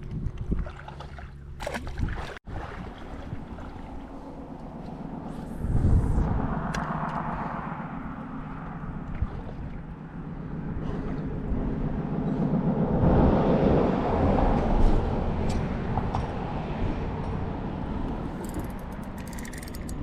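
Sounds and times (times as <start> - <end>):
wind noise on microphone: 0.0 - 1.0, 4.7 - 7.9, 10.7 - 20.0
engine running: 2.7 - 20.0.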